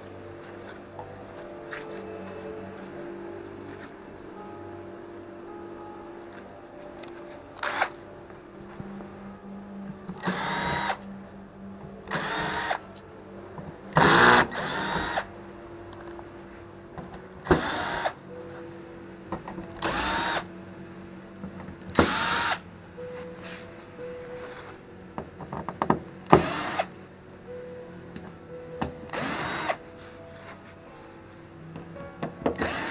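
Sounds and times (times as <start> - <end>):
electric drill whining: 7.6 - 8.0, 10.1 - 11.0, 12.1 - 12.8, 14.0 - 15.3, 17.4 - 18.2, 19.8 - 20.5, 22.0 - 22.6, 26.3 - 27.0, 29.1 - 29.9, 32.5 - 32.9.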